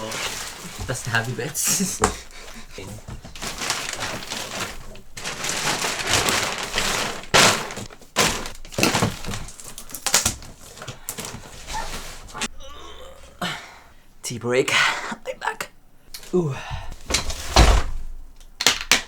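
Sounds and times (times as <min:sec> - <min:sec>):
packaging rustling and crackling: 0:00.0 - 0:12.5
sharp cracks and knocks: 0:03.2 - 0:11.5, 0:17.1 - 0:19.0.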